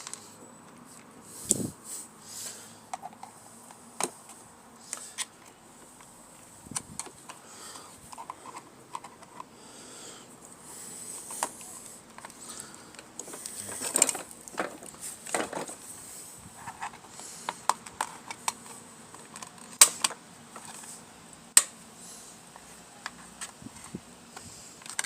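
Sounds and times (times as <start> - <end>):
hand tools clicking and scraping: 6.8 - 9.5, 10.9 - 21.0.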